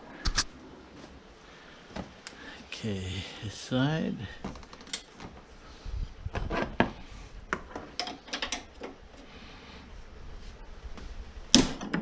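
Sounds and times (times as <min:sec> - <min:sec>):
loud sharp snap: 0:00.2 - 0:00.5, 0:11.5 - 0:11.8.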